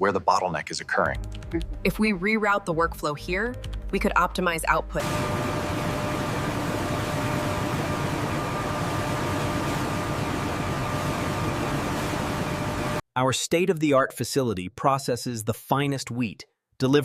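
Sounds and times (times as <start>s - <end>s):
machinery hum and hiss: 5.0s - 13.0s.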